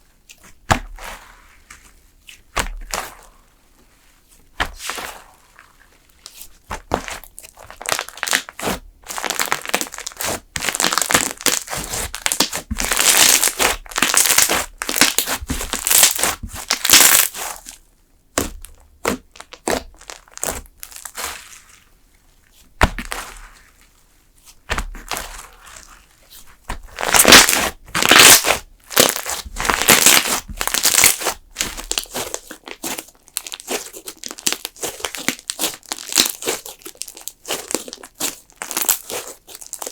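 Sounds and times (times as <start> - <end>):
slime squeezed and crackling: 4.8 - 17.8, 18.4 - 21.9, 26.9 - 39.9.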